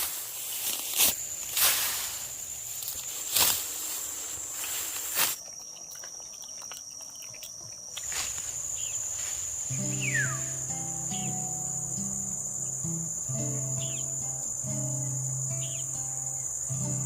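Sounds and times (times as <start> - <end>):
insects trilling: 0.0 - 17.0
short bird chirps: 9.7 - 10.6
soft music of low notes: 9.7 - 17.0
falling whistle: 9.8 - 10.6.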